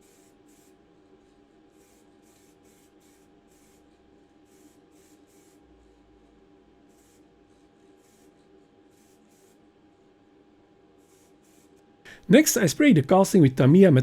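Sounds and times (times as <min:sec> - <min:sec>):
spray paint hisses: 0:01.8 - 0:03.8, 0:04.5 - 0:05.6, 0:08.0 - 0:08.3, 0:08.9 - 0:09.6, 0:11.0 - 0:11.7.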